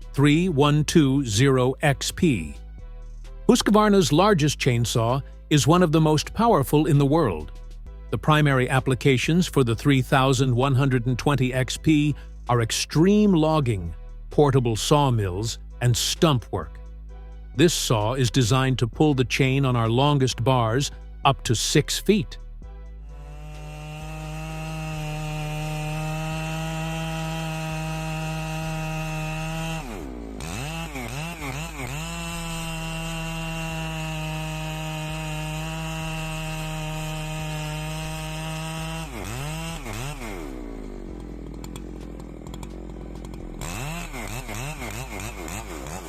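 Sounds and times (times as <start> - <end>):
chainsaw engine revving: 8.2 - 15.3, 23.0 - 46.0.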